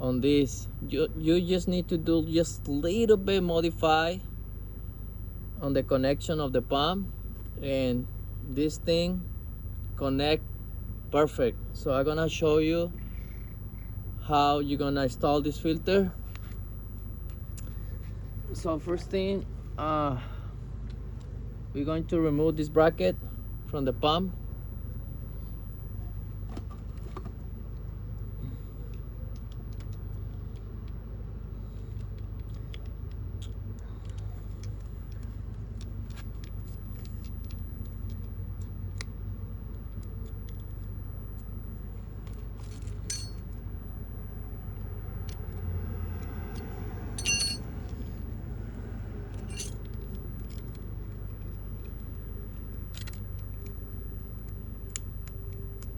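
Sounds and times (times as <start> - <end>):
steady low hum: 0.0 - 55.9
small metallic clicks and clinks: 42.2 - 43.5, 47.2 - 47.6, 49.3 - 53.8.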